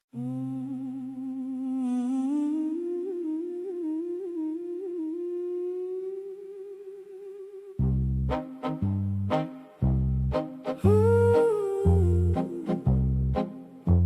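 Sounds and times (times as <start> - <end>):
person humming: 0.1 - 8.0, 10.6 - 13.6.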